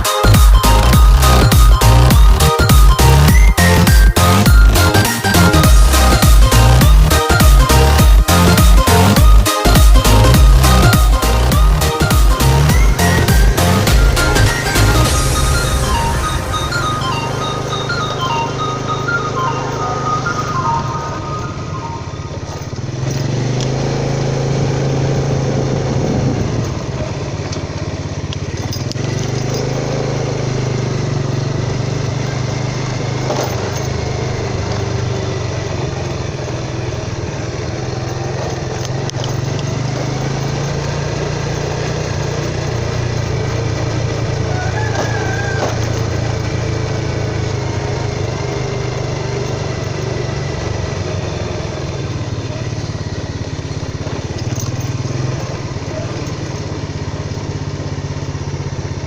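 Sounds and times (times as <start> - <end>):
small engine running: 0.0 - 59.0.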